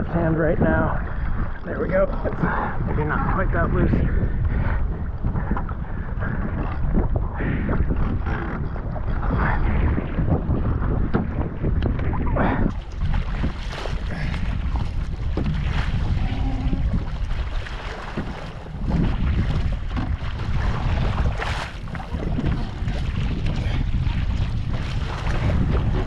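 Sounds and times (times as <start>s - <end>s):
water sloshing around kayak: 0.0s - 26.0s
wind buffeting microphone: 0.0s - 26.0s
water splashes: 7.0s - 26.0s.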